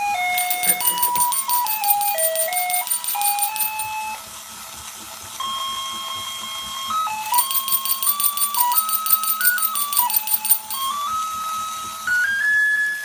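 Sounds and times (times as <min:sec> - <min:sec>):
electronic beeping christmas tune: 0:00.4 - 0:03.9
toy bell jingling: 0:00.4 - 0:03.9, 0:07.3 - 0:10.9.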